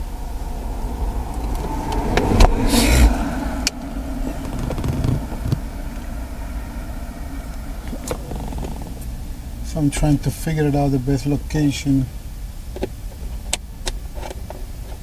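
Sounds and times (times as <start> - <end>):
low thumps: 0.0 - 10.4
steady low rumble: 0.0 - 15.0.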